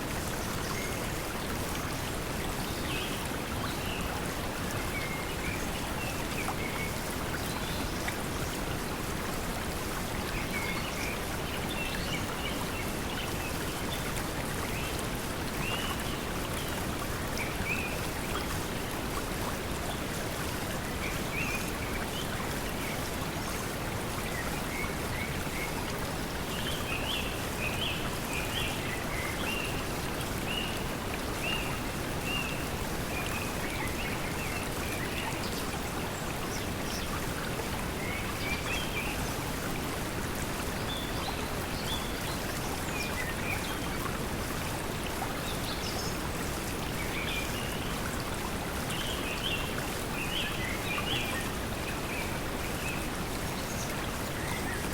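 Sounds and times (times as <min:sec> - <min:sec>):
flowing water: 0:00.0 - 0:54.9.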